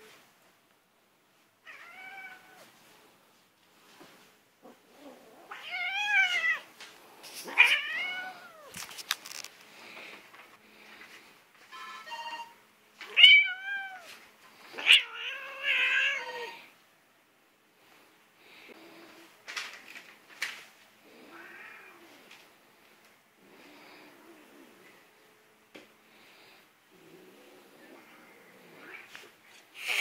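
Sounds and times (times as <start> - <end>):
cat meowing: 1.7 - 2.6.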